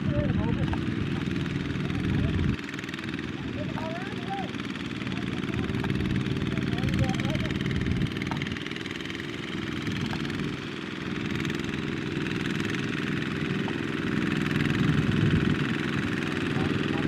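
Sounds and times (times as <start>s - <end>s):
small diesel engine running: 0.0s - 17.0s.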